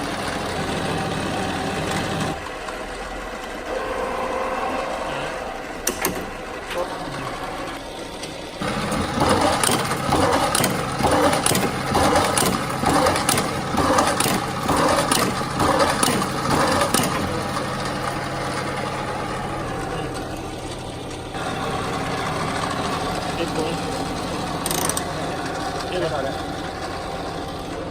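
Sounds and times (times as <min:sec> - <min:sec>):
electric paper drill drilling: 0:08.6 - 0:27.9.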